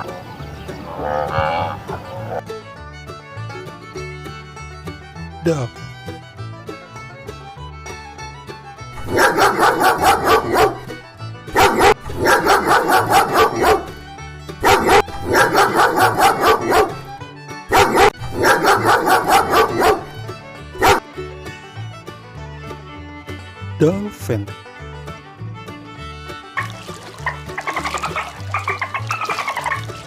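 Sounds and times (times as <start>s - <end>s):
dog barking: 9.0s - 14.0s, 14.6s - 17.1s, 17.7s - 20.2s, 20.8s - 21.0s.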